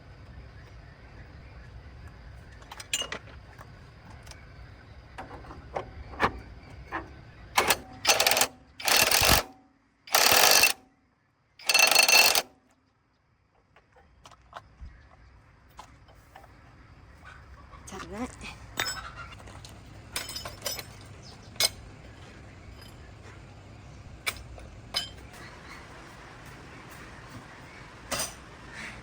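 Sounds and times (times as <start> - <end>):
hand tools clicking on bolt: 7.6 - 9.5, 10.1 - 10.8, 11.6 - 12.5
impact wrench bursts: 7.6 - 10.8, 11.6 - 12.5.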